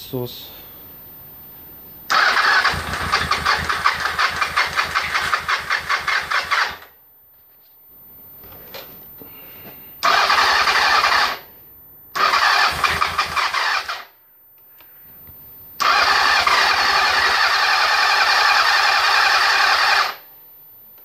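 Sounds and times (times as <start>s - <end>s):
engine cranking on electric starter: 2.1s - 6.9s, 10.0s - 11.4s, 12.2s - 14.1s, 15.8s - 20.2s.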